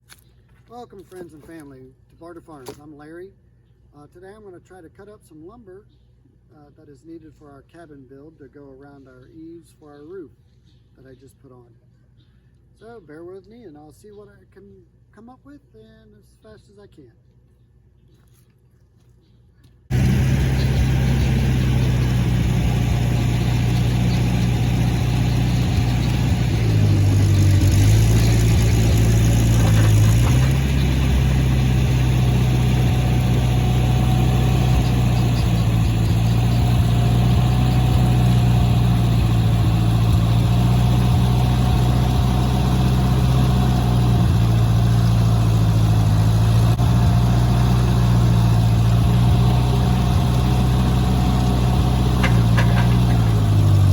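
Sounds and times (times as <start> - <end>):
engine idling: 19.9 - 53.9.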